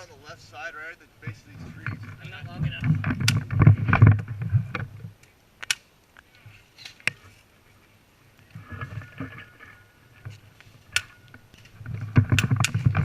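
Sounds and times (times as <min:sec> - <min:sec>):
rustle of movement and gear: 0:00.0 - 0:05.4, 0:06.1 - 0:13.0
airsoft gun cracks: 0:05.6 - 0:06.2.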